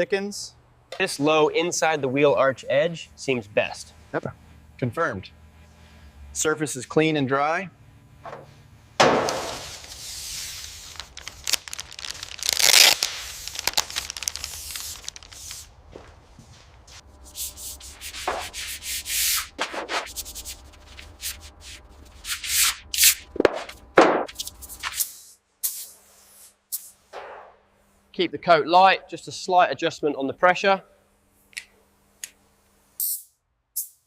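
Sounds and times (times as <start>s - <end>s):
rubbing and scraping strokes: 9.4s - 11.2s, 16.6s - 23.2s.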